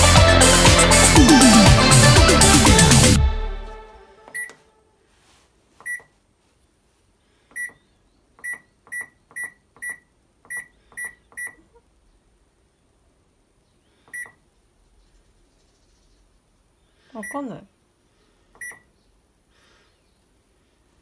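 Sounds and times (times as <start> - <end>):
washing machine button beeps: 4.3 - 4.6, 5.8 - 6.1, 7.6 - 7.8, 8.4 - 11.6, 14.1 - 14.4, 18.6 - 18.9.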